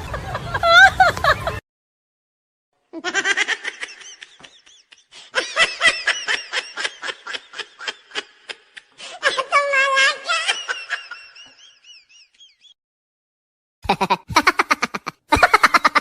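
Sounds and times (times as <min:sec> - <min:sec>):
person laughing high-pitched: 0:13.8 - 0:16.0.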